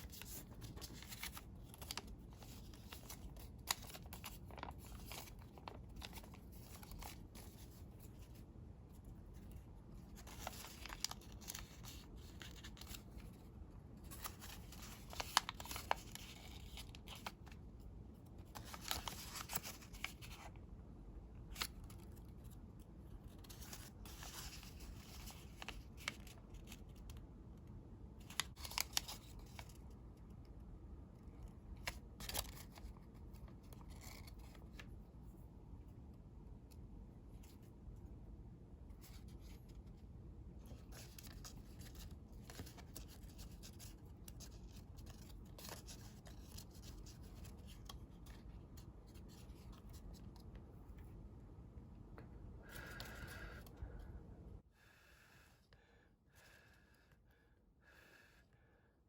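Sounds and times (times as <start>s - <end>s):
paper rustling and creasing: 0.0s - 20.6s, 21.4s - 27.2s, 28.2s - 30.0s, 31.4s - 35.2s, 38.8s - 51.2s.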